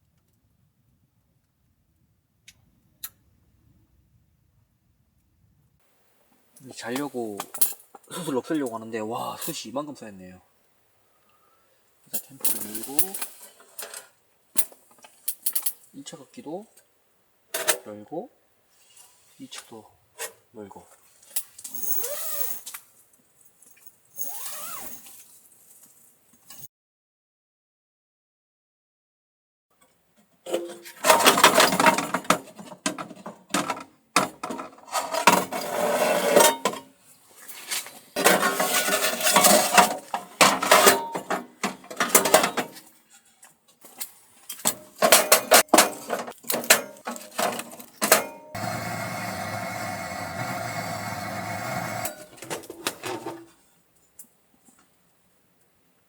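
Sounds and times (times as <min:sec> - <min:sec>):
metal tool clanking in stove: 0:30.5 - 0:34.6, 0:38.2 - 0:42.8, 0:44.6 - 0:48.6.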